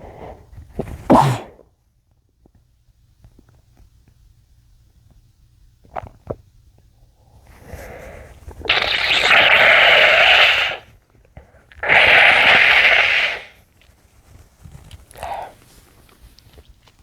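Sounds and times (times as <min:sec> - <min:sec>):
man sneezing: 0:01.1 - 0:01.6, 0:11.8 - 0:13.5.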